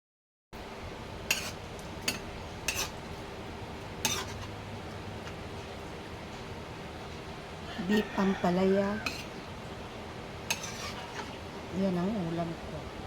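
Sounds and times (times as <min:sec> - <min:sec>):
steady low hum: 0:00.6 - 0:13.0
metal utensil clinking cookware: 0:10.5 - 0:11.4.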